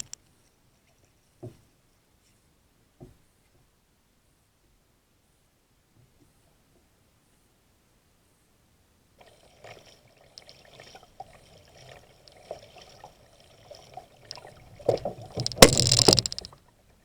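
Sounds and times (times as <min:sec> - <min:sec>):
water splashing at a kayak: 0:09.2 - 0:16.5.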